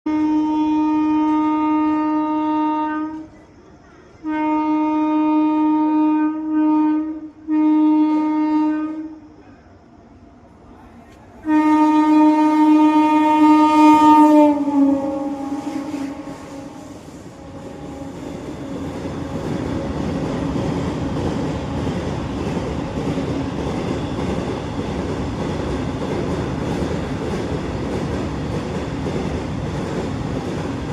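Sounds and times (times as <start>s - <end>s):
locomotive horn blasts: 0.1s - 3.3s, 4.2s - 9.2s, 11.4s - 18.2s
train rumbling and clattering past: 10.1s - 30.9s.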